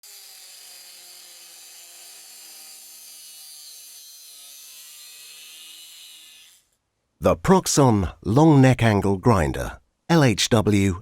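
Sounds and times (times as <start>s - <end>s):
angle grinder whining and grinding: 0.0s - 6.7s.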